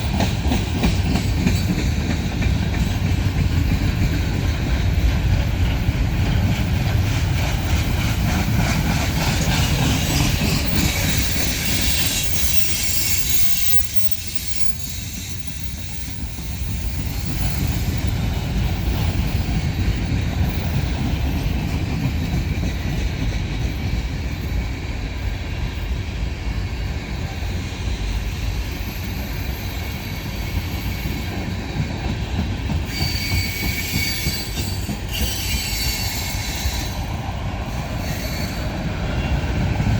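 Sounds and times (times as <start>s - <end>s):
train wheels rumbling on rails: 0.0s - 39.9s
high wheel squeal: 9.3s - 20.6s, 32.8s - 39.4s.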